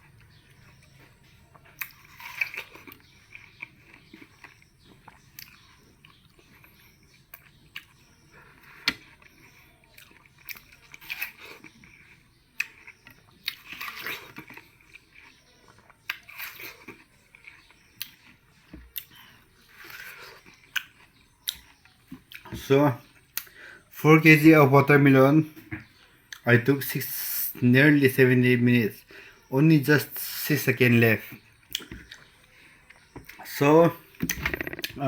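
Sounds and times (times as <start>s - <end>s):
crunchy watermelon bites and chewing: 0.1s - 23.6s, 31.4s - 33.6s.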